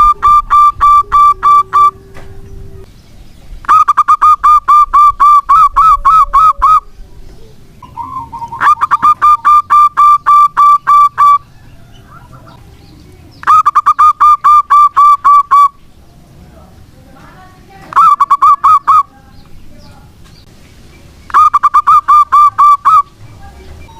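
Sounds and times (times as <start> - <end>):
dove cooing: 0.0 - 2.9, 3.7 - 12.8, 21.3 - 23.2.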